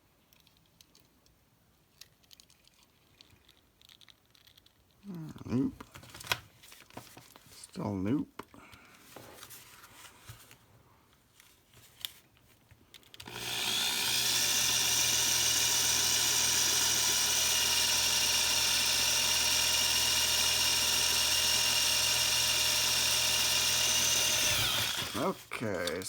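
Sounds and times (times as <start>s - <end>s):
power drill whining: 13.2s - 26.0s.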